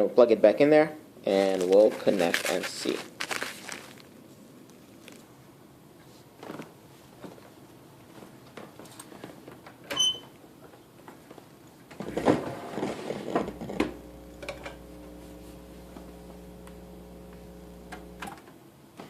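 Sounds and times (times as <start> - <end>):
scraping and rustling: 1.4 - 5.3, 12.0 - 14.0
steady hum: 13.4 - 18.4.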